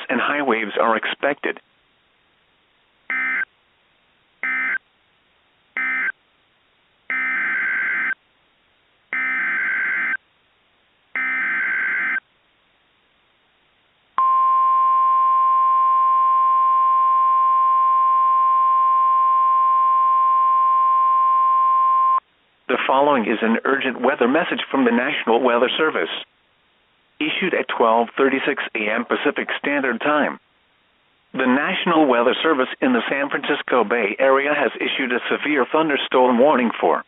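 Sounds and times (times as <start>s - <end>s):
weather radio alarm tone: 11.2s - 12.2s.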